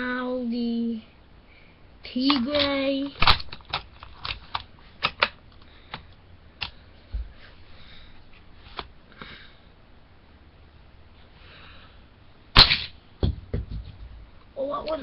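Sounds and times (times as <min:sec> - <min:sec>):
dull thump: 0:13.2 - 0:14.2.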